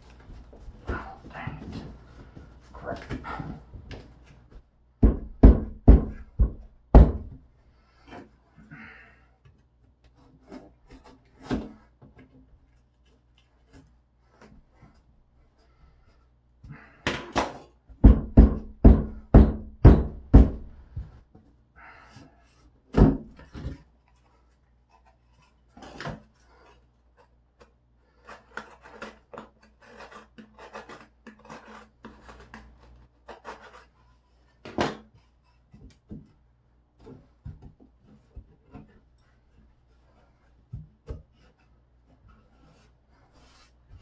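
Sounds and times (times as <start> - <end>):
knocks on drywall: 5.0 - 7.4, 17.1 - 20.9, 22.9 - 23.4
scraping against drywall: 10.1 - 16.9, 21.8 - 36.4, 37.0 - 44.0.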